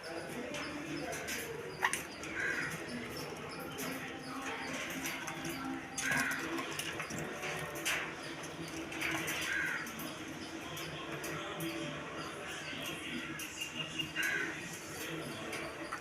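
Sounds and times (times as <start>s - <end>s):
parrot calling and chattering: 0.2s - 10.6s.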